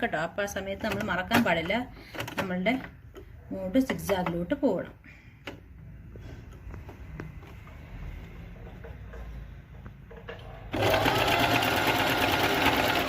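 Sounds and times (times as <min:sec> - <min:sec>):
electric sewing machine running: 0:10.7 - 0:13.0.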